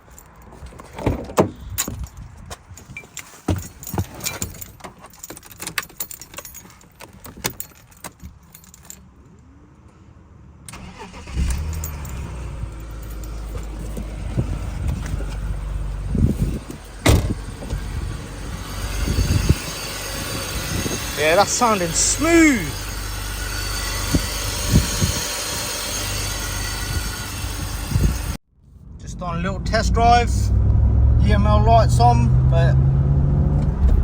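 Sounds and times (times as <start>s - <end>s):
keys jingling: 0.0s - 9.3s, 10.9s - 21.2s
car engine starting and idling: 10.7s - 34.0s.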